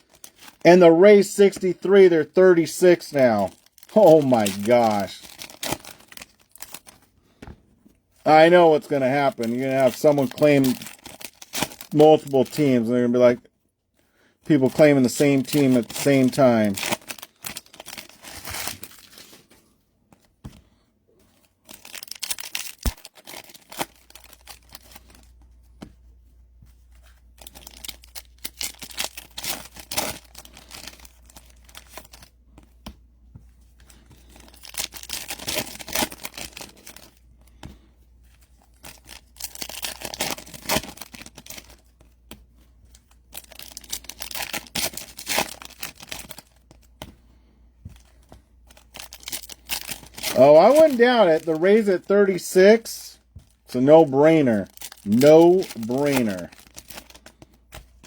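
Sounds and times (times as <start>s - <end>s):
foil wrappers tearing and crinkling: 0.0s - 7.0s, 8.3s - 12.9s, 14.5s - 19.5s, 21.6s - 25.3s, 27.4s - 32.3s, 33.9s - 37.2s, 38.6s - 42.1s, 42.9s - 46.9s, 48.6s - 52.9s, 53.5s - 58.0s.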